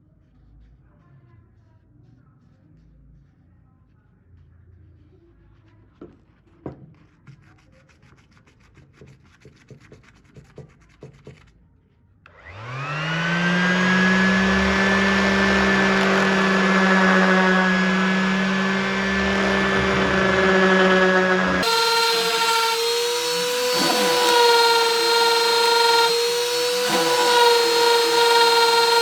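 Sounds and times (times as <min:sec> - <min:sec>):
power tool motor whining: 0:12.3 - 0:29.0.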